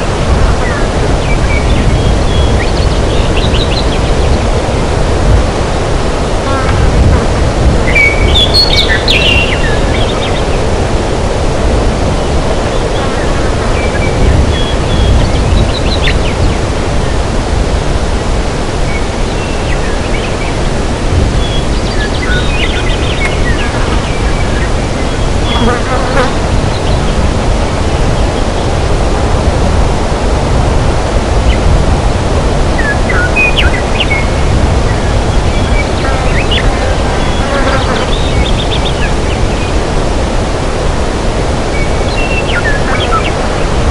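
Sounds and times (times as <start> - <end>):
steady rushing noise: 0.0 - 43.9
bird chirps and trills: 0.6 - 4.8, 7.9 - 10.6, 12.2 - 16.6, 21.4 - 27.2, 32.8 - 39.8, 41.7 - 43.4.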